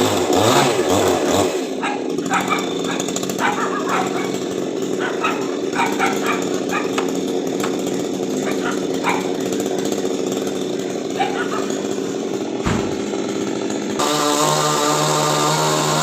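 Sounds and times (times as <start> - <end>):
chainsaw idling: 0.0 - 16.0
short barks: 1.8 - 4.4, 5.0 - 7.0, 11.2 - 11.8.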